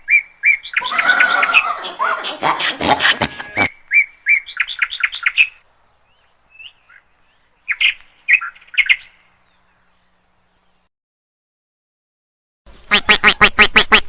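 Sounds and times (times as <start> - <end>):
bird chirping: 0.0 - 2.5, 3.6 - 10.9.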